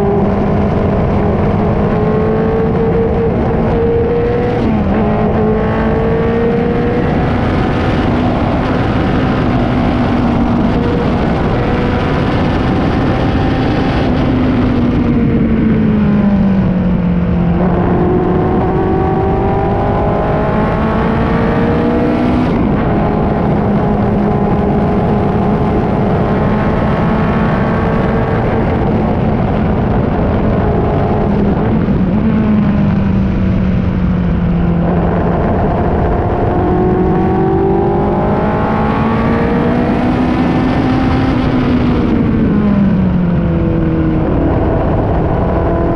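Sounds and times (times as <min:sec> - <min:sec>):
racing car engine revving: 0:00.0 - 0:16.6, 0:17.5 - 0:33.9, 0:34.6 - 0:45.9.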